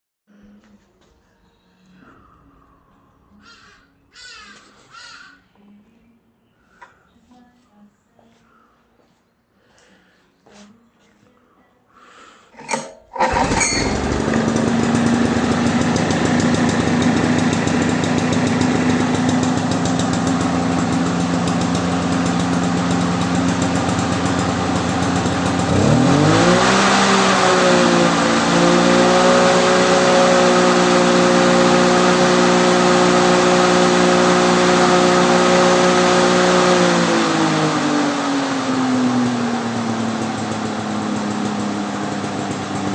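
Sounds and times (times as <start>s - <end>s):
lawnmower engine pull-started: 12.6s - 42.9s
lawnmower engine running: 12.6s - 42.9s.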